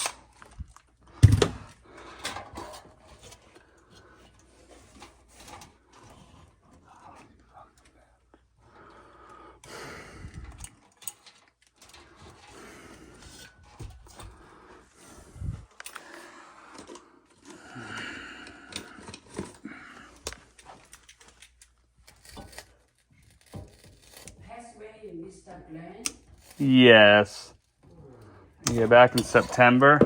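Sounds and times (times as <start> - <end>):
metal tools clicking and rattling: 10.4 - 12.5, 20.3 - 22.6, 28.6 - 30.0.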